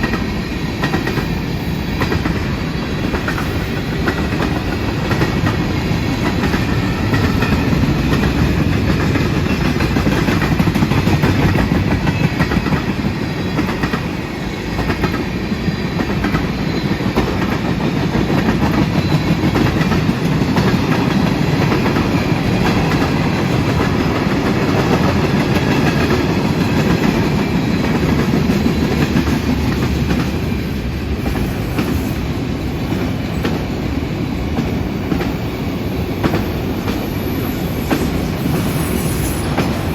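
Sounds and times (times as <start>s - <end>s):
freight train rolling past: 0.0s - 39.9s.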